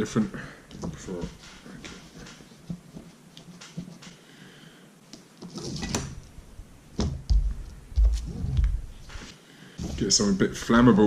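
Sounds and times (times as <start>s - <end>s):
heavy low thuds: 6.9s - 9.2s.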